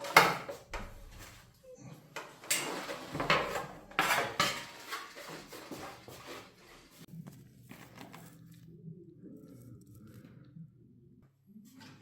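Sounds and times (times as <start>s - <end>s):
metal tools clinking and scraping: 2.2s - 6.0s.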